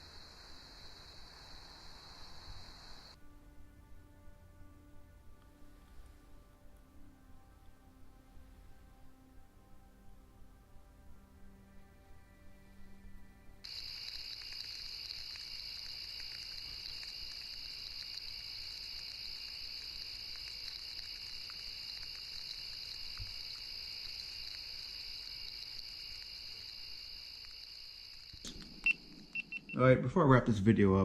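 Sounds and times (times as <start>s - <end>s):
high cricket-like masking sound: 0.0s - 3.2s, 13.6s - 30.4s.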